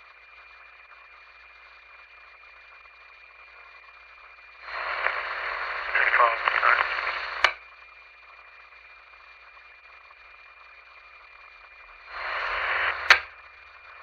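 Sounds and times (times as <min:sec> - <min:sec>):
faint steady whine: 0:00.0 - 0:14.0
radio static hiss: 0:00.0 - 0:14.0
radio squelch click: 0:04.7 - 0:07.6, 0:12.1 - 0:13.4.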